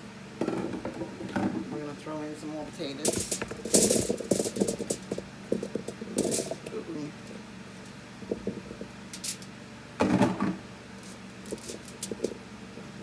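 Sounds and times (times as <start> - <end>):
steady low hum: 0.0 - 13.0
potatoes dropped onto foil: 3.0 - 6.8, 9.2 - 9.5, 11.0 - 12.4.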